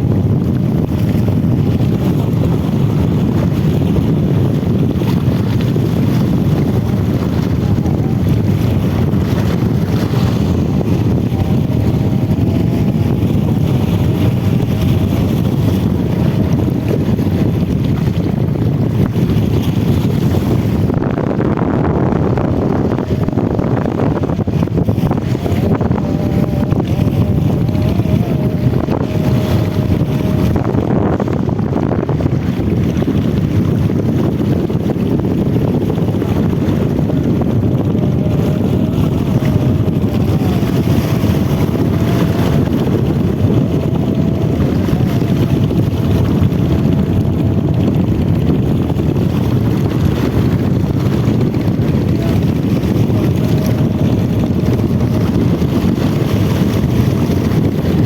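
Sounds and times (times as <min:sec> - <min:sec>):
boat engine droning: 0:00.0 - 0:58.0
wind buffeting microphone: 0:00.0 - 0:58.0
faint wavering whine: 0:05.0 - 0:18.2, 0:20.9 - 0:33.0, 0:35.7 - 0:49.0.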